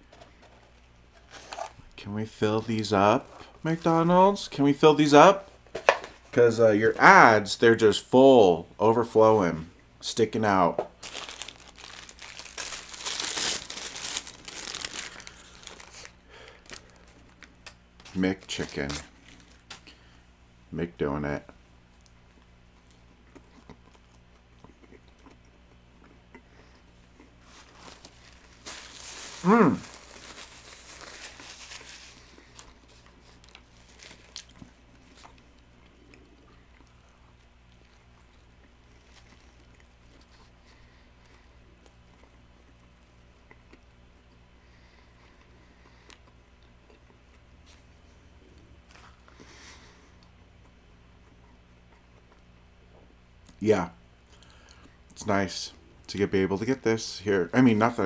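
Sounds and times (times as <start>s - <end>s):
paper packaging crinkling: 0.1s - 1.9s, 11.0s - 20.1s, 27.4s - 35.4s
chewing with small clicks: 21.9s - 27.4s, 34.3s - 47.9s, 50.1s - 53.6s, 54.2s - 55.2s.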